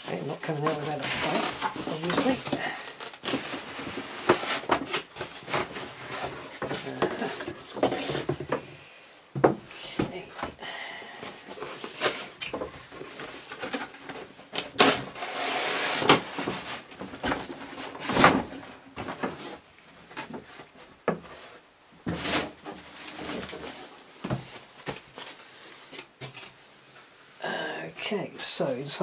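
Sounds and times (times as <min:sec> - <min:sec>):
cardboard boxes scraping: 0:00.2 - 0:08.8, 0:09.5 - 0:27.4
cardboard knocks and clatters: 0:00.6 - 0:10.6, 0:16.0 - 0:25.4.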